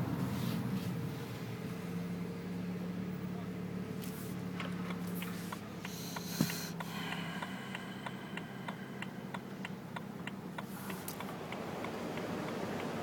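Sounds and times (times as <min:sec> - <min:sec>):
rhythmic wheel ticking: 0:05.2 - 0:13.0.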